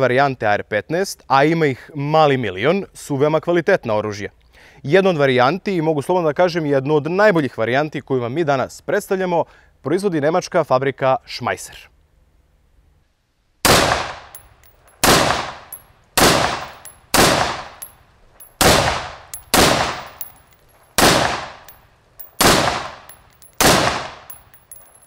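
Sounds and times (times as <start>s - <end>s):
light metallic clinks: 14.3s - 21.0s, 21.6s - 25.0s
rifle shots with echo: 15.0s - 15.6s, 16.2s - 17.9s, 18.5s - 20.3s, 20.9s - 24.4s.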